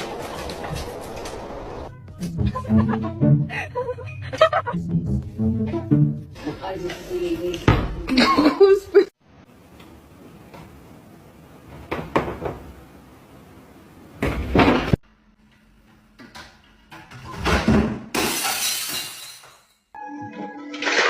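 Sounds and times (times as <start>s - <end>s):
glass smashing: 18.1s - 19.9s, 20.7s - 21.0s.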